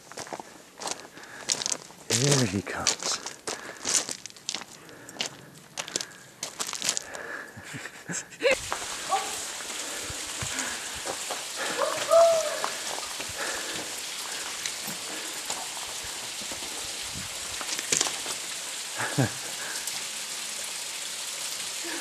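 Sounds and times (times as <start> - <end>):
waterfall rushing: 8.4 - 22.0.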